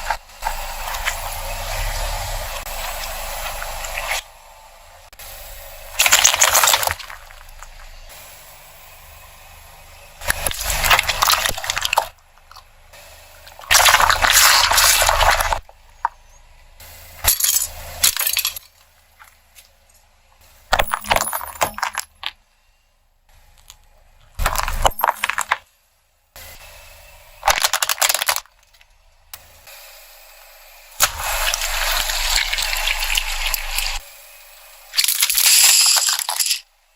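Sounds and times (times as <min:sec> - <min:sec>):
objects crunching under tyres: 0:00.0 - 0:04.3, 0:06.0 - 0:08.0, 0:10.2 - 0:12.7, 0:13.4 - 0:16.4, 0:23.5 - 0:25.7, 0:27.4 - 0:29.0.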